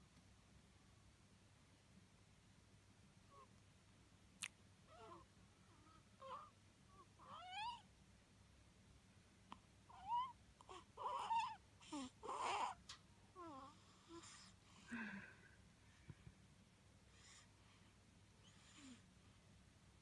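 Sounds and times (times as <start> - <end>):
cat mewing and chirping: 6.2 - 7.9, 9.9 - 10.4.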